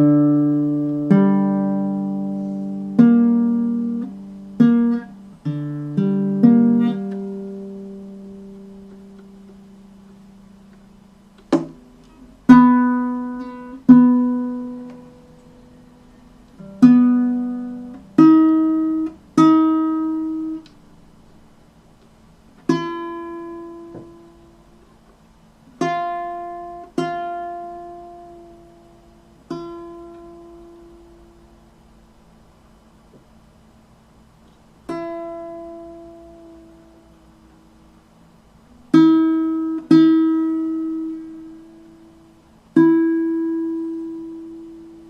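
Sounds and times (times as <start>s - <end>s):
ukulele strings plucked: 11.4s - 15.5s.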